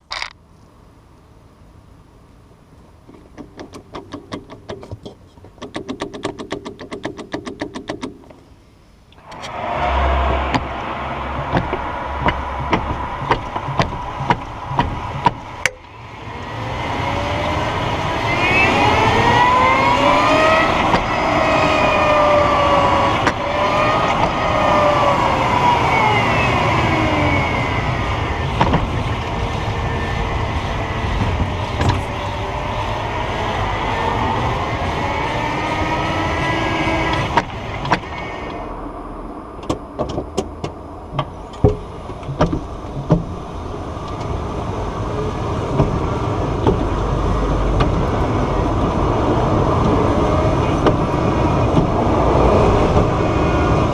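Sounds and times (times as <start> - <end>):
road noise: 0.0 - 53.9
drivetrain clunks and knocks: 10.2 - 15.8, 28.4 - 29.0, 39.6 - 43.5, 45.7 - 46.0, 47.7 - 48.2.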